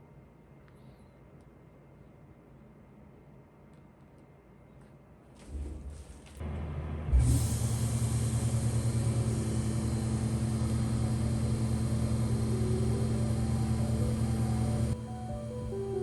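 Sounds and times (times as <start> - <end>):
milling machine running: 6.4 - 16.0.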